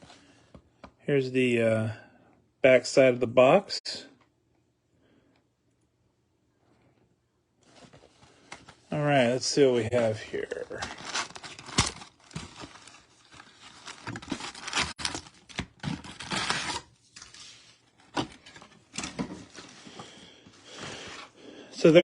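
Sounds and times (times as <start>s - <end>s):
cardboard tearing and crinkling: 10.4s - 19.2s.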